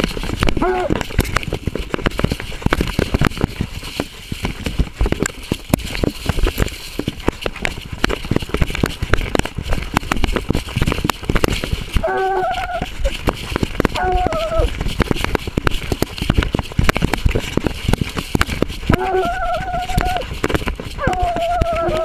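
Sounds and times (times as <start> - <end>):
camera knocking and rustling: 0.0 - 22.0
hound bawling: 0.6 - 1.0, 12.0 - 13.0, 14.0 - 14.7, 18.9 - 20.2, 21.0 - 22.0.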